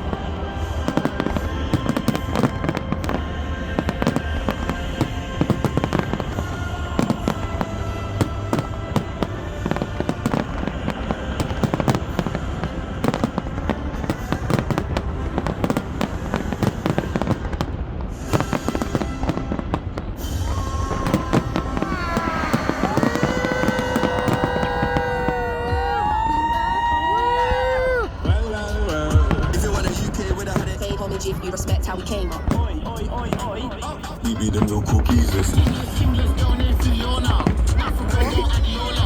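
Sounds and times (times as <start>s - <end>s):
fireworks bangs and crackling: 0.0s - 39.0s
music with heavy bass: 28.0s - 39.0s.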